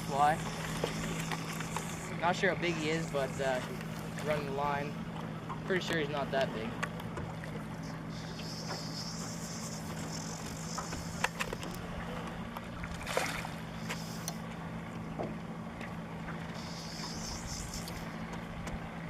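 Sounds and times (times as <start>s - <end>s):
steady low hum: 0.0s - 19.0s
fly reel clicking: 0.1s - 3.8s, 8.1s - 11.8s, 13.8s - 14.4s, 16.6s - 18.2s.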